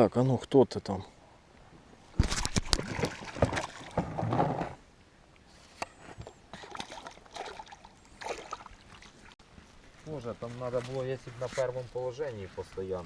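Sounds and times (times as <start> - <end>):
water splashing around a boat: 2.2 - 4.3, 6.5 - 9.4.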